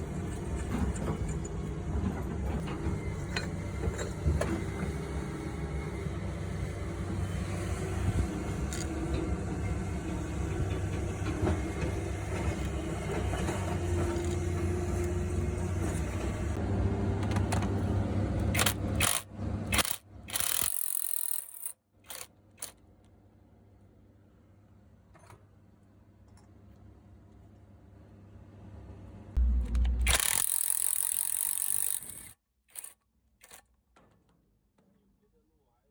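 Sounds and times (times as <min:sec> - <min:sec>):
diesel truck engine running: 0:29.4 - 0:30.2.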